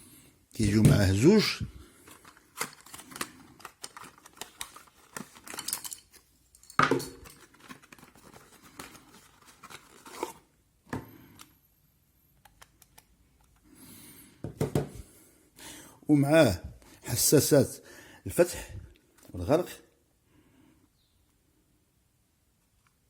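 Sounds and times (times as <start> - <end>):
packaging rustling and crinkling: 0.7 - 10.5.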